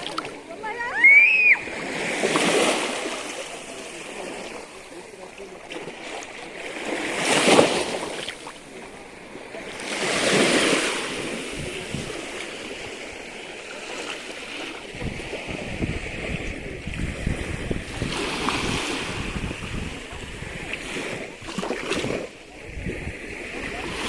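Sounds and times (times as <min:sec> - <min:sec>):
ocean waves washing in: 0:00.0 - 0:24.0
wind buffeting microphone: 0:11.1 - 0:12.3, 0:14.8 - 0:24.0.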